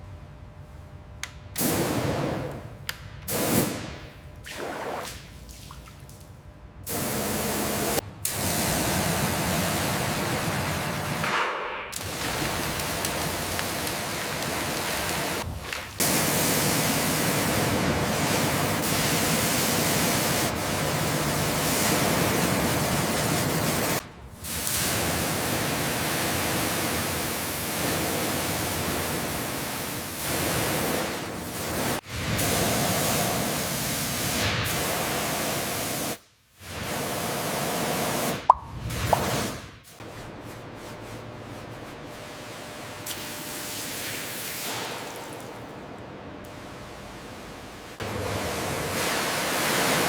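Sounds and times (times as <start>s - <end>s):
pressure washer spraying water: 6.9s - 11.2s, 12.0s - 36.2s.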